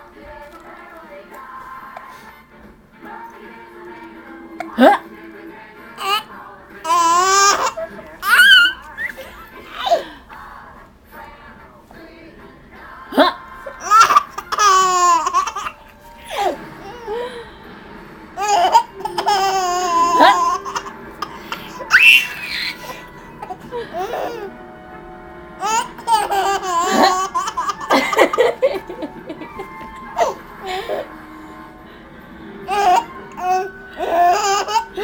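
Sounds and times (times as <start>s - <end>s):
baby girl giggling: 6.9s - 10.0s, 18.4s - 24.5s, 25.6s - 31.1s.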